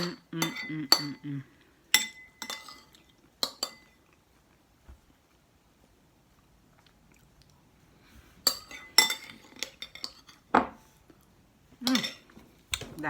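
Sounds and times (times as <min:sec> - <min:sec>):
cutlery clinking against dishes: 0:00.0 - 0:01.2, 0:02.0 - 0:04.0, 0:08.4 - 0:10.8, 0:11.8 - 0:12.9.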